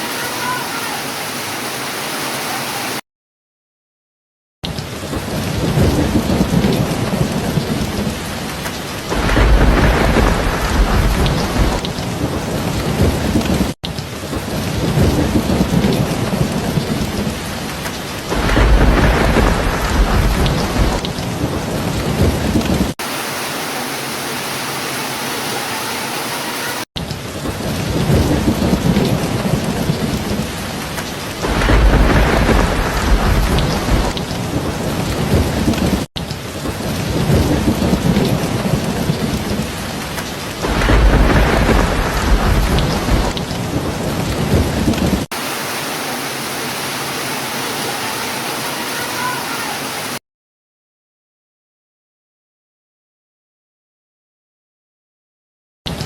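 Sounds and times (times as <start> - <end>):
heavy rain falling: 0.0 - 3.0, 4.6 - 50.2
low rolling thunder: 5.0 - 23.0, 27.3 - 45.3.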